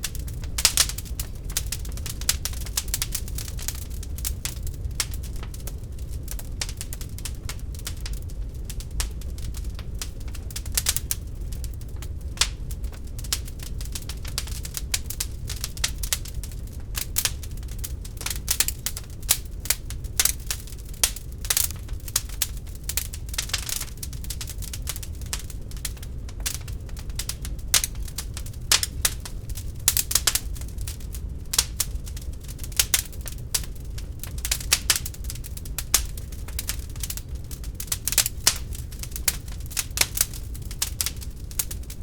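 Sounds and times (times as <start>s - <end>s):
wood fire crackling: 0.0s - 42.0s.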